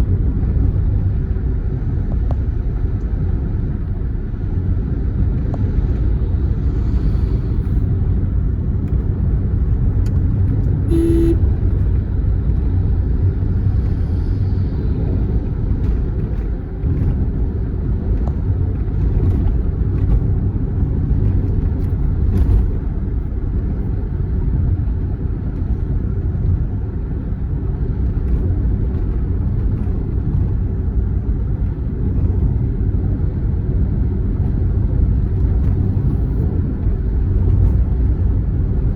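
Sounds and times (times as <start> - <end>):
vehicle engine and tyre noise: 0.0 - 38.9
short beep: 10.9 - 11.5.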